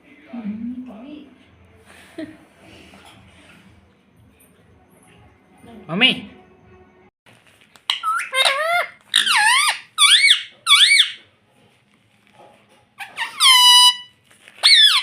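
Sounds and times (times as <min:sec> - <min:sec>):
parrot warbling calls: 0:07.9 - 0:11.2, 0:13.0 - 0:15.0.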